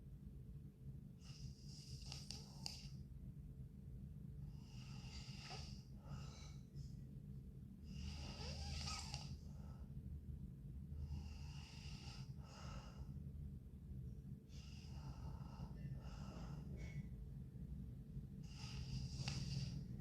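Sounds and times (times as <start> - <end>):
steady low hum: 0.0 - 20.0
woman snoring: 4.6 - 6.3, 7.9 - 9.4, 11.0 - 13.0, 18.4 - 20.0.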